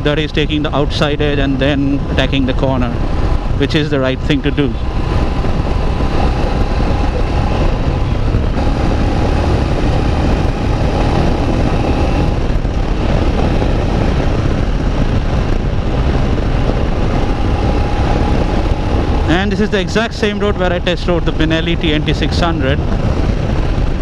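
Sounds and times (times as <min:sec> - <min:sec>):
motorcycle engine running: 0:00.0 - 0:24.0
wind rush over microphone: 0:00.0 - 0:24.0.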